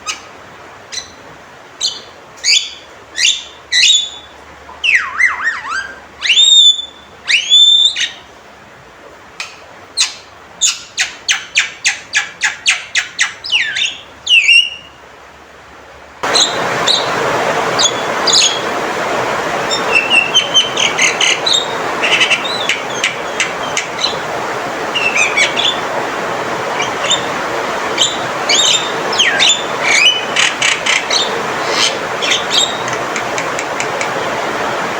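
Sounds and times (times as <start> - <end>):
myna whistled calls: 0.9 - 1.2, 1.8 - 8.3, 10.0 - 15.0, 16.2 - 18.8, 19.6 - 24.3, 24.9 - 25.9, 26.7 - 33.0
steady hiss: 14.9 - 34.9
fast repeated bird notes: 16.2 - 34.3.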